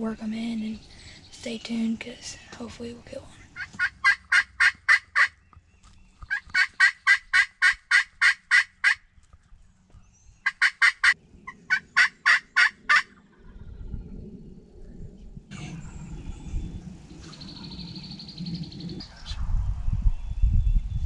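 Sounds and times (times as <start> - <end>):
turkey yelping: 3.6 - 5.4, 6.2 - 9.0, 10.4 - 13.2.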